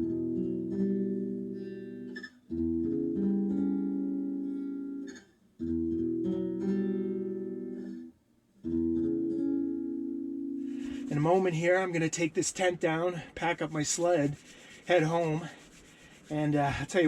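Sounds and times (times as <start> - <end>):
strummed guitar chords: 0.0 - 11.6.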